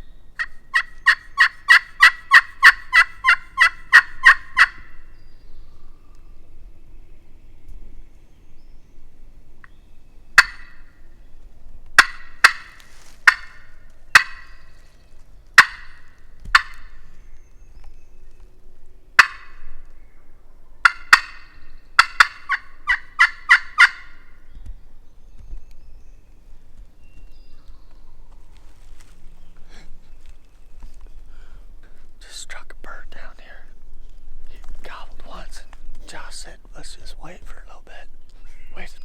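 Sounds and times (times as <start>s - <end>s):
turkey call clucks: 0.4s - 5.0s, 10.4s - 10.9s, 12.0s - 14.8s, 15.6s - 17.1s, 19.2s - 19.7s, 20.8s - 24.4s.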